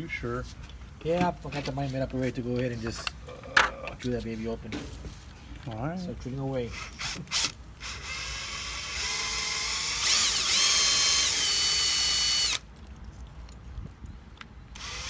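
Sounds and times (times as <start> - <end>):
power drill whining: 6.7 - 12.6, 14.8 - 15.0.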